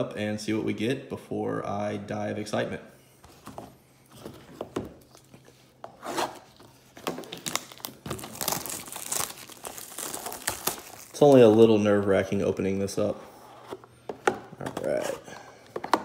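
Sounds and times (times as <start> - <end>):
wrapping crinkling and tearing: 6.2 - 12.3.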